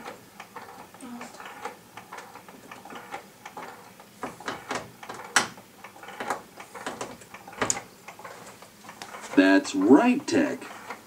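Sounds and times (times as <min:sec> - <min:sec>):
speaker clicks pops and crackling: 0:01.6 - 0:09.4
faint broken tv audio: 0:06.0 - 0:11.0.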